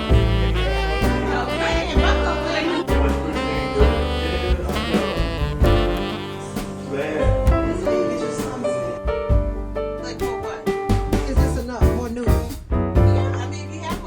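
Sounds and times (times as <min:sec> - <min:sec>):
jazz horn melody: 0:00.0 - 0:10.0
steady drum beat: 0:00.0 - 0:14.0.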